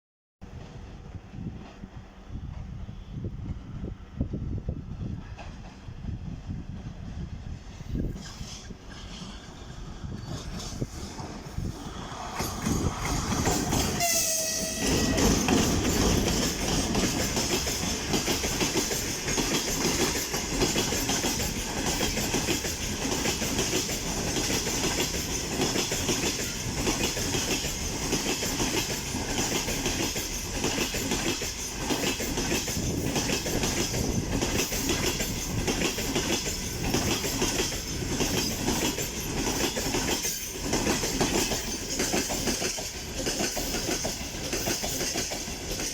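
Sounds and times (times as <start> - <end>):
loud rolling rumble of train: 0.4 - 45.9
wagon wheels clacking over rail joints: 12.3 - 45.9
train horn blast: 13.9 - 15.5.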